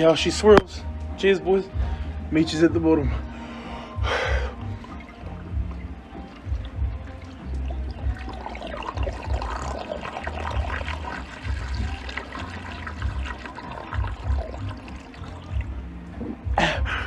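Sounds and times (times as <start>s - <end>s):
music with steady bass beat: 0.0s - 17.0s
water gurgling from bottle: 4.0s - 16.6s.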